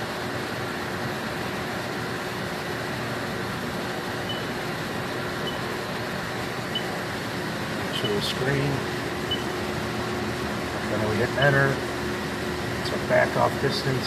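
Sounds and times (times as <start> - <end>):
machine whirring hum: 0.0 - 14.0
short high beeps: 4.3 - 4.5, 9.3 - 9.5.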